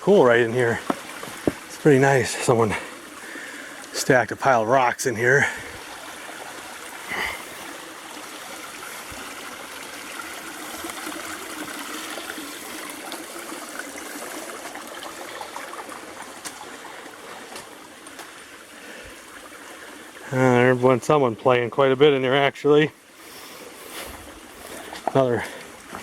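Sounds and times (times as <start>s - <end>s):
creek water running over rocks: 0.0s - 26.0s.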